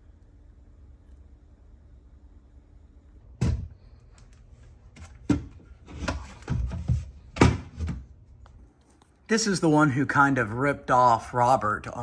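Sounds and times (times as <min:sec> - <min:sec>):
objects thudding on a workbench: 0:03.4 - 0:03.8, 0:05.0 - 0:08.1
scraping and shuffling: 0:04.2 - 0:09.1.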